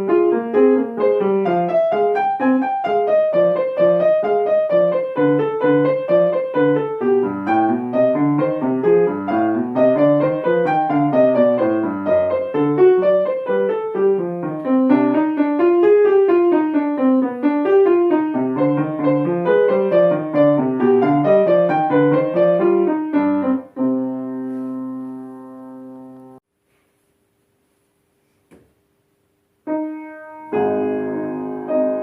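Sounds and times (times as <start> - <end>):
piano playing quick runs: 0.0 - 26.4
piano chord ringing: 29.7 - 32.0.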